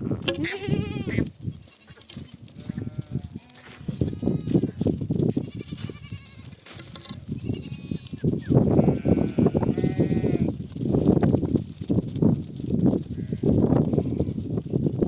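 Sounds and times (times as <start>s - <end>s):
goats bleating: 0.1s - 6.6s, 7.3s - 10.5s.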